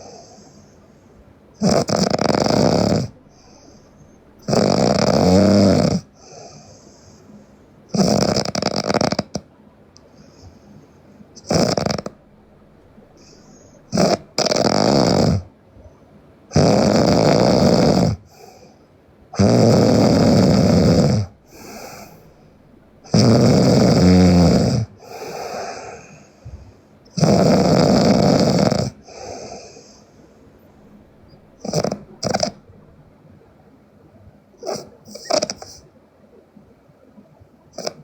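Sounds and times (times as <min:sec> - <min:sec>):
soft breath: 0:00.0 - 0:01.4, 0:03.1 - 0:04.4, 0:06.1 - 0:07.8, 0:10.0 - 0:11.4, 0:13.1 - 0:13.9, 0:18.2 - 0:19.0, 0:21.4 - 0:22.7, 0:24.9 - 0:27.1, 0:28.9 - 0:32.6
woman snoring loudly: 0:01.6 - 0:03.2, 0:04.4 - 0:06.1, 0:07.9 - 0:09.4, 0:11.4 - 0:12.2, 0:13.9 - 0:15.5, 0:16.5 - 0:18.3, 0:19.4 - 0:22.2, 0:23.1 - 0:26.2, 0:27.1 - 0:30.0, 0:31.6 - 0:32.6, 0:34.6 - 0:35.8, 0:37.8 - 0:38.0.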